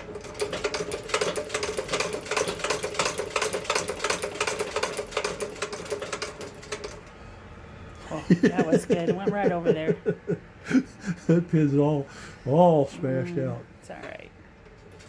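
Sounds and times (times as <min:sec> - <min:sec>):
sewing machine needle clatter: 0:00.0 - 0:07.1
sewing machine hum: 0:00.0 - 0:07.7.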